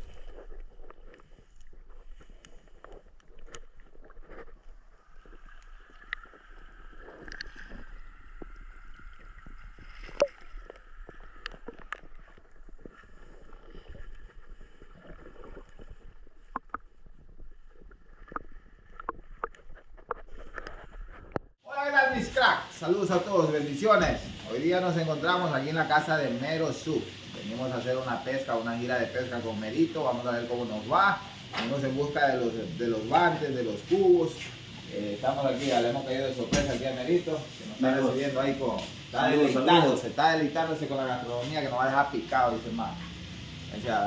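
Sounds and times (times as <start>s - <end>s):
water splashing and sloshing: 0.0s - 25.4s.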